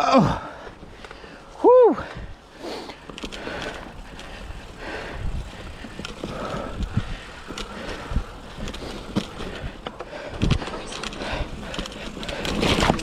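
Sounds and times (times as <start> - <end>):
bike tyres rolling on dirt: 0.0 - 13.0
bike knocking and rattling: 2.0 - 13.0
wind on microphone: 3.8 - 13.0.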